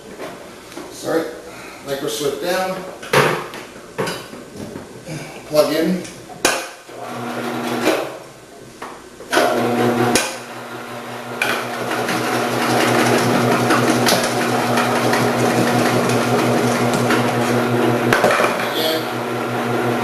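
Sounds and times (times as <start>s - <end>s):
vegetable processor motor hum: 6.9s - 8.0s, 9.4s - 20.0s.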